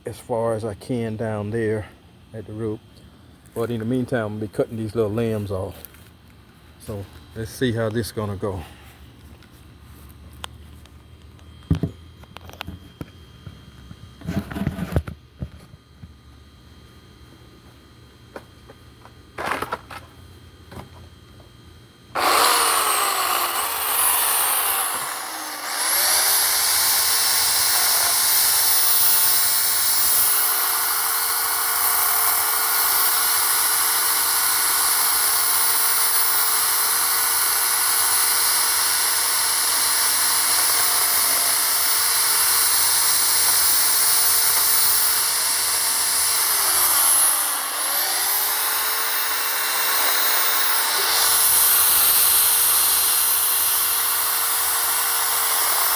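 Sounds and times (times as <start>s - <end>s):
electric chainsaw cutting wood: 22.1s - 55.9s.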